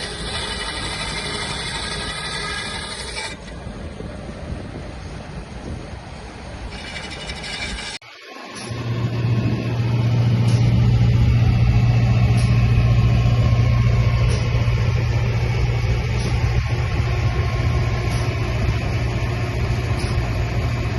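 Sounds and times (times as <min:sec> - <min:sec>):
machine humming: 0:06.7 - 0:20.9.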